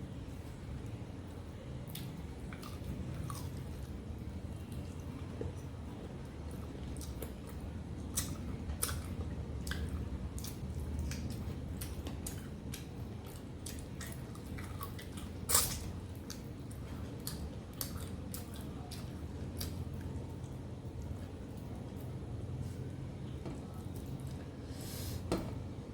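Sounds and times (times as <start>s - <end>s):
steady low hum: 0.0s - 25.9s
wet chewing and mouth clicks: 6.5s - 20.2s.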